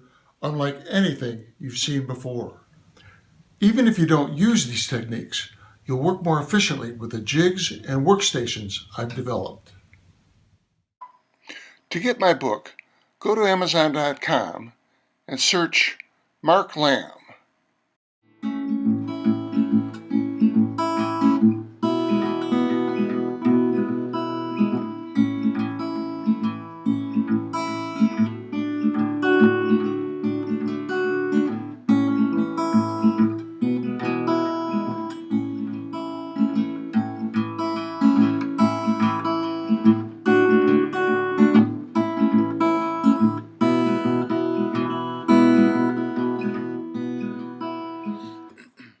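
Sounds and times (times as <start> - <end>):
acoustic guitar strumming chords: 18.3 - 48.6.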